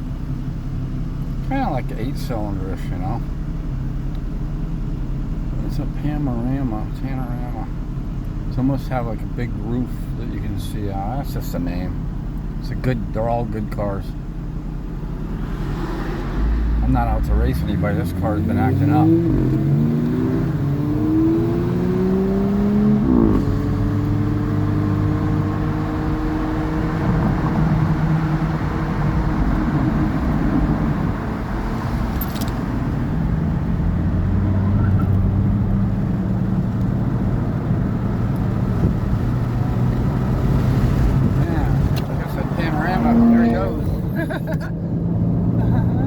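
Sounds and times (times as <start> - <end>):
road and tyre noise: 0.0 - 46.0
car engine accelerating: 0.8 - 46.0.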